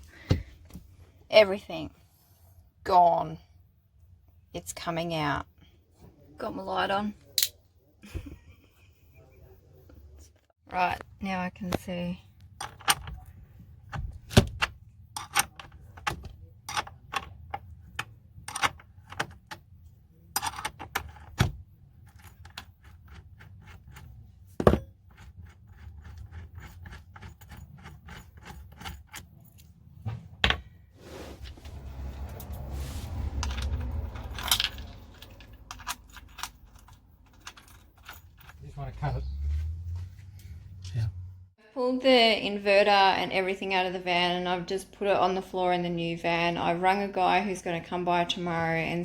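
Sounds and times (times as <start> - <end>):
low scraping and rustling: 30.9 - 35.6
metal tools clicking and clinking: 33.4 - 38.9.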